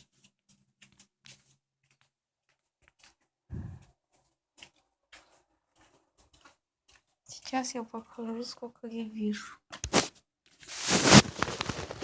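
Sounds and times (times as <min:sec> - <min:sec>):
faint rustling: 0:09.8 - 0:12.0.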